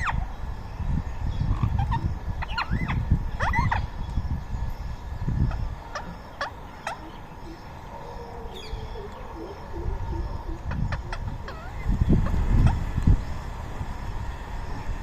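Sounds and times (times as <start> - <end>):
parakeets screeching: 1.4 - 4.0, 5.3 - 12.8.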